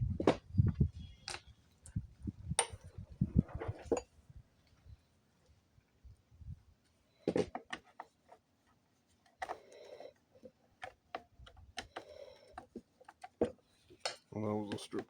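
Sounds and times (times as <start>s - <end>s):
tool and parts clicking and knocking: 1.2s - 3.0s, 10.4s - 15.0s.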